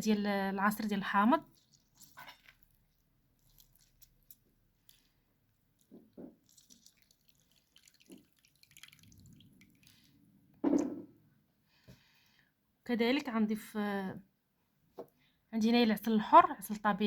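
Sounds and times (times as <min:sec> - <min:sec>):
juice dripping from a spoon: 0:00.7 - 0:10.2.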